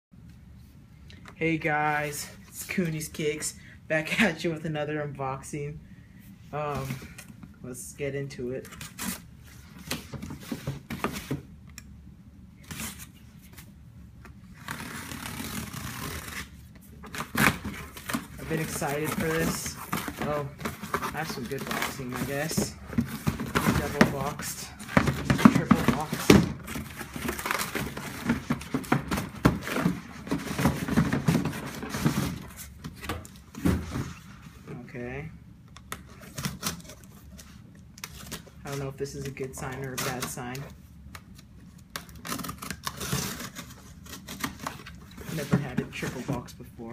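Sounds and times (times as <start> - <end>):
cardboard boxes rustling and scraping: 14.5 - 34.9, 42.5 - 46.6.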